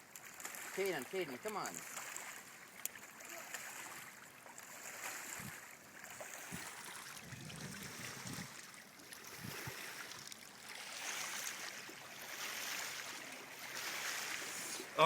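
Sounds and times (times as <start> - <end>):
river water rushing: 4.6 - 15.0.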